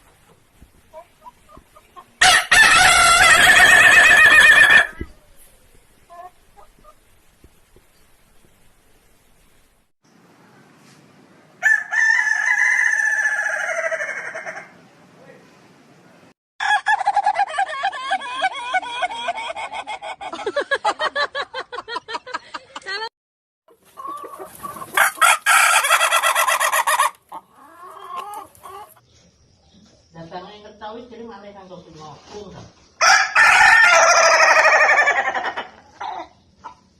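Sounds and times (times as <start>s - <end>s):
rooster crowing: 2.2s - 5.2s, 11.6s - 14.8s, 16.6s - 18.8s, 25.0s - 27.2s, 33.0s - 36.1s.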